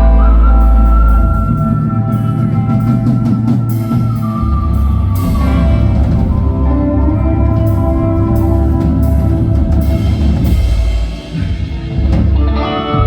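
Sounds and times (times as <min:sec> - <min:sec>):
long sliding held notes: 0:00.0 - 0:12.1
live country band playing: 0:00.0 - 0:13.0.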